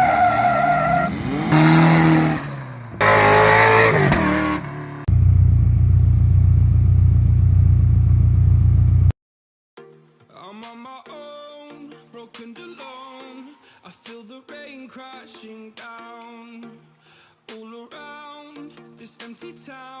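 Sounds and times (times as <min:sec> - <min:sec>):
car engines revving: 0:00.0 - 0:09.1
low engine rumble: 0:03.9 - 0:09.1.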